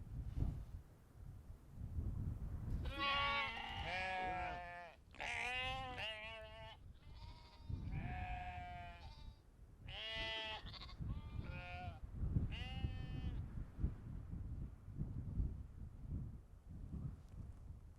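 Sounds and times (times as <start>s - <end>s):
sheep bleating: 2.9s - 13.2s.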